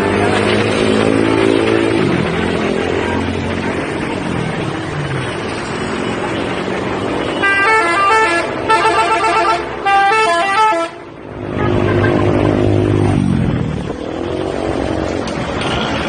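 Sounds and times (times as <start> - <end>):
bus musical horn playing a tune: 7.4 - 11.9.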